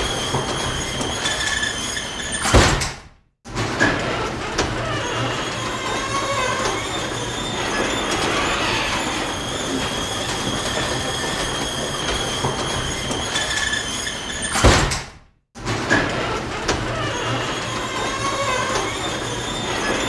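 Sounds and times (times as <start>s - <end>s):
garage door rolling rumble: 3.9s - 13.3s.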